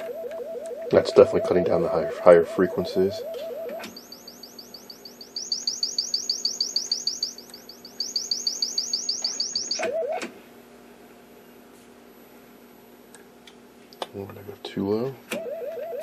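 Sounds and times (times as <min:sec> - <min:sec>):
rising chirp tones: 0:00.0 - 0:10.1
faint steady hum: 0:00.0 - 0:16.0.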